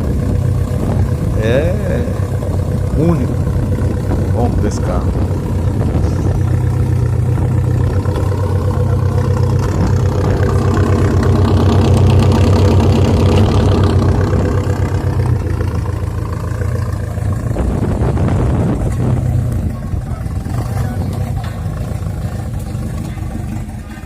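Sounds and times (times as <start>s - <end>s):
car engine burbling exhaust rumble: 0.0s - 24.0s.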